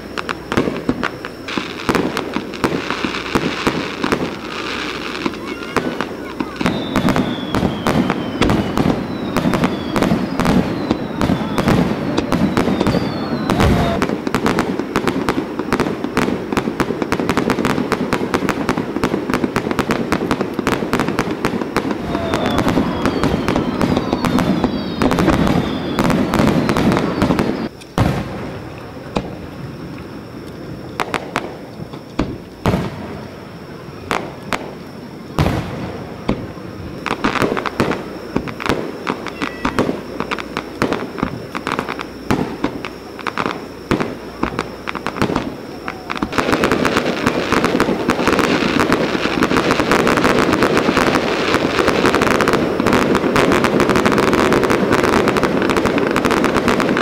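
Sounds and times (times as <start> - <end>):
single firework booms: 0.0 - 29.4, 30.7 - 57.0
falling firework whistles: 0.0 - 57.0
firework shell bursts and crackling: 0.0 - 57.0.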